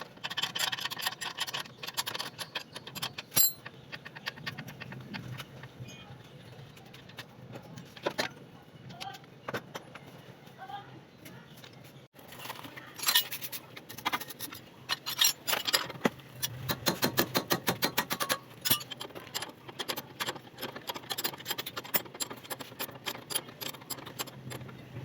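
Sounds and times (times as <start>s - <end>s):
light metallic clicks and clinks: 0.6s - 3.8s, 13.0s - 24.8s.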